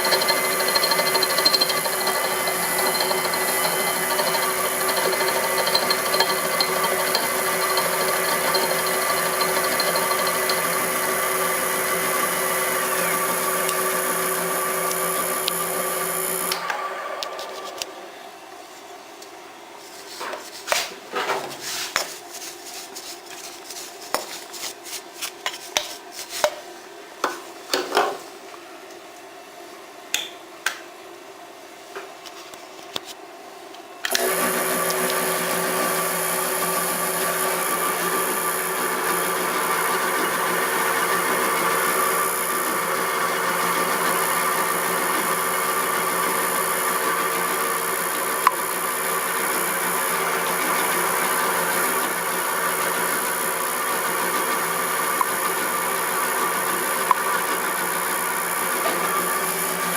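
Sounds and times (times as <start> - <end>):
electric motor whining: 0.0 - 18.1.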